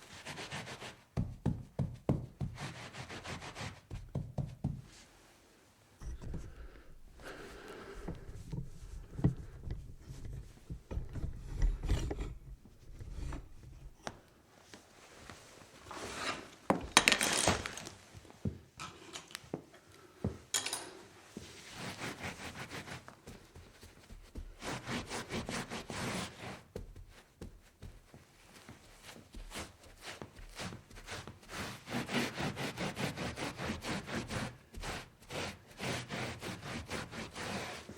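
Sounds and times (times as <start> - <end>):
low knocks and handling thumps: 6.0 - 14.0
scrubbing against a surface: 28.5 - 37.9.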